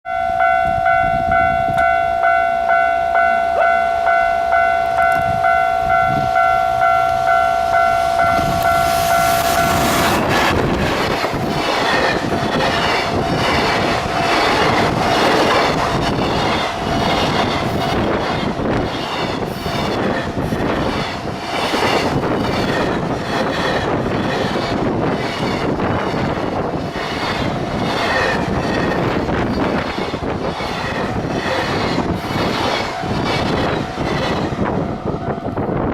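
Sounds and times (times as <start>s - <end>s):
level crossing warning bell: 0.0s - 9.7s
freight train wagons rushing: 0.4s - 35.9s
wheels clattering over rail joints: 9.9s - 35.0s.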